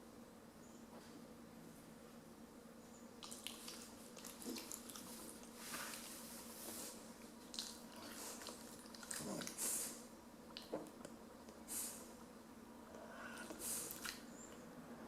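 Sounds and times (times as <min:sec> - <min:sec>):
wet mouth clicks and smacks: 0:03.2 - 0:05.5, 0:07.5 - 0:07.8.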